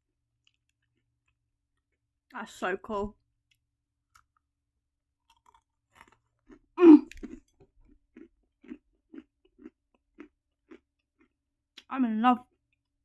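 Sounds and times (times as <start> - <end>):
chewing: 5.2 - 11.4
chocolate bar crunch: 5.2 - 11.4.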